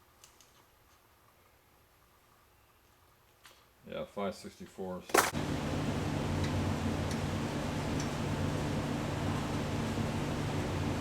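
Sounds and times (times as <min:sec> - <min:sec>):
fan humming and hissing: 0:05.2 - 0:11.0.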